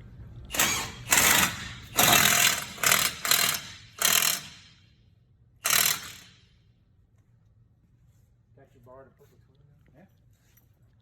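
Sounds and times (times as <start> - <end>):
impact wrench hammering: 0.5 - 4.8, 5.6 - 6.5.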